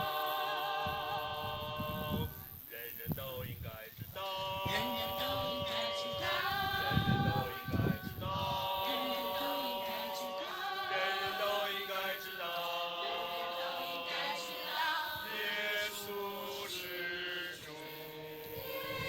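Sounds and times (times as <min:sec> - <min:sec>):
voices singing in chorus: 0:00.0 - 0:19.0.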